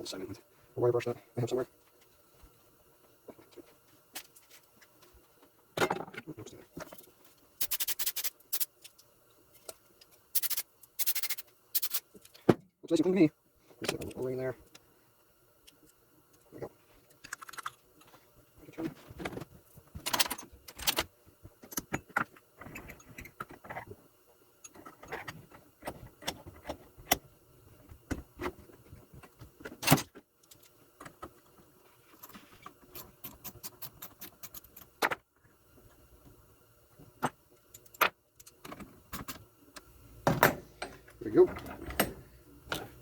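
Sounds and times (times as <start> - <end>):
small metal parts clinking: 6.9 - 12.4.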